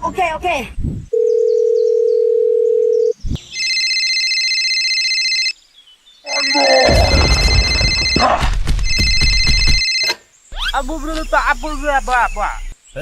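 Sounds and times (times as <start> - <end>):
electronic telephone ringing: 1.2 - 5.5, 6.3 - 8.3, 8.9 - 10.1
telephone dial tone: 1.2 - 5.5.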